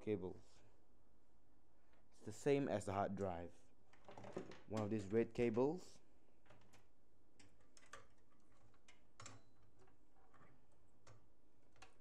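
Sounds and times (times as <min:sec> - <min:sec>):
cables clicking and tapping: 0:03.9 - 0:05.7, 0:06.4 - 0:12.0.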